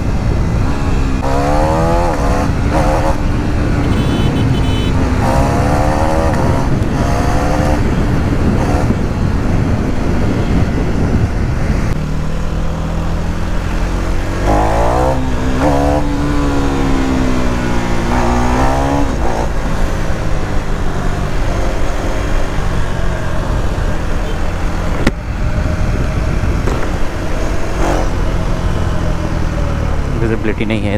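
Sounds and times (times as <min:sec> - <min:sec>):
wind noise on microphone: 0:00.0 - 0:12.0, 0:14.2 - 0:29.6
motorcycle engine running: 0:00.0 - 0:30.9.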